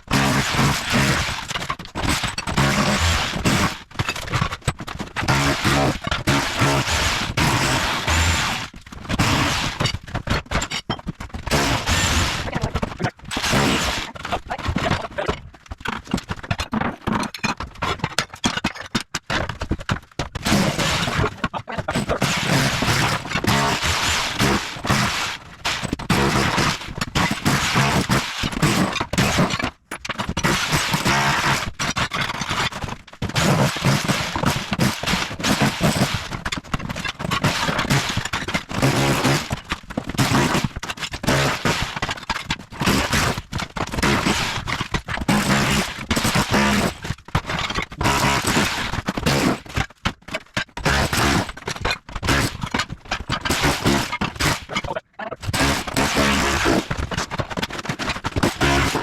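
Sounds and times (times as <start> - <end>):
rotary hammer chiselling tile: 0.0 - 59.0
tile cracking and scraping: 0.2 - 7.5, 8.6 - 59.0.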